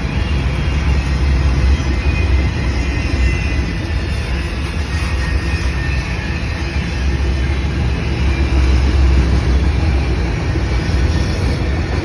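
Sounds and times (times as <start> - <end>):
freight train rumbling on rails: 0.0 - 12.0.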